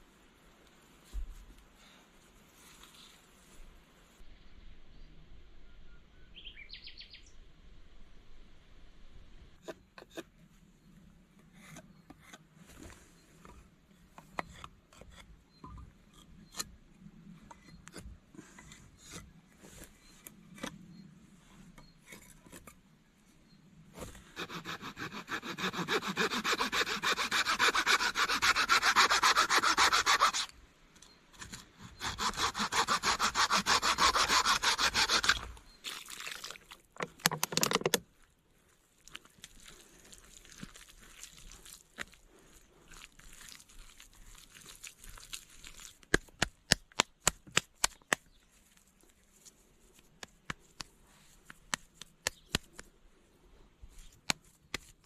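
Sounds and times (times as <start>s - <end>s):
saw cutting wood: 24.4s - 30.5s, 31.9s - 35.5s.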